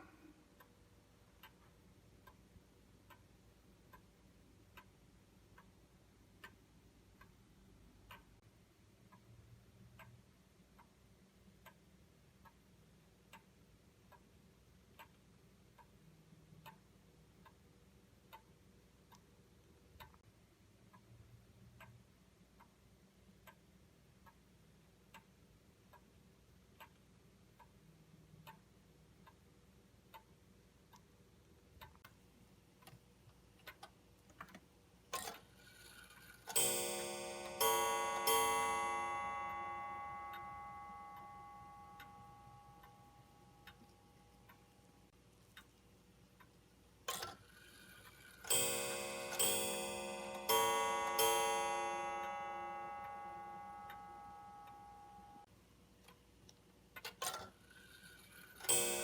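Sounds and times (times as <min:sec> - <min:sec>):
wall clock ticking: 0:00.0 - 0:59.0
striking mechanism click: 0:47.1 - 0:55.5, 0:57.0 - 0:59.0.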